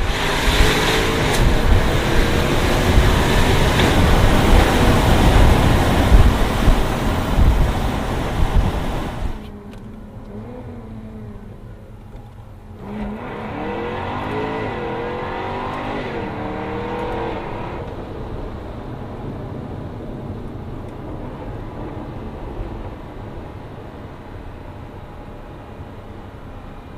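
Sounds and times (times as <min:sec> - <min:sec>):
car engine revving: 0:00.0 - 0:11.8, 0:12.7 - 0:18.1.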